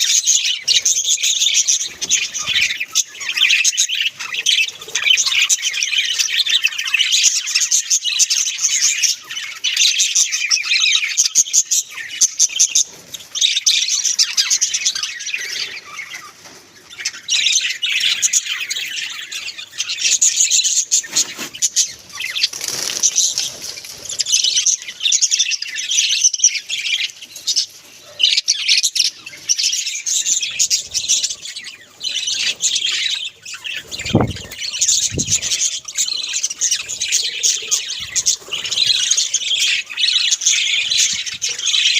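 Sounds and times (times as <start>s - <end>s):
budgerigars chattering and warbling: 0.0s - 41.9s.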